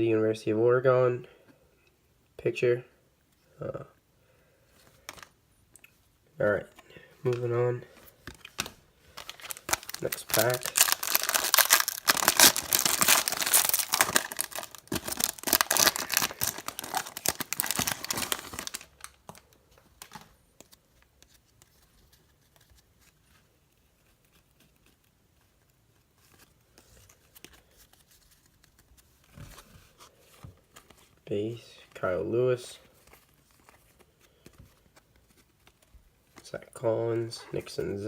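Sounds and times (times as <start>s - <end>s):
wrapper tearing and crinkling: 8.5s - 19.3s.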